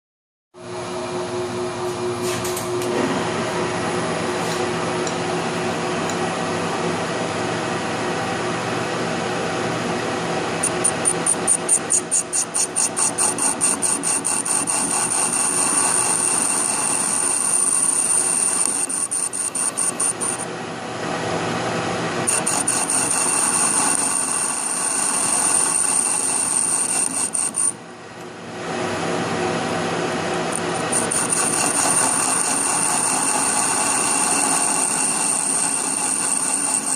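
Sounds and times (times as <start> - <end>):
metal lathe running: 10.4 - 20.5, 22.2 - 27.8, 30.2 - 36.9
high-pitched pulsing squeal: 10.7 - 20.4.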